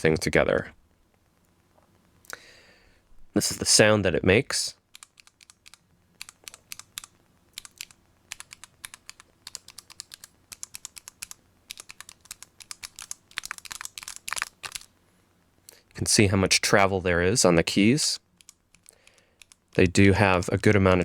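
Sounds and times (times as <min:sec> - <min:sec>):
mechanical keyboard key clacks: 0:05.0 - 0:14.9.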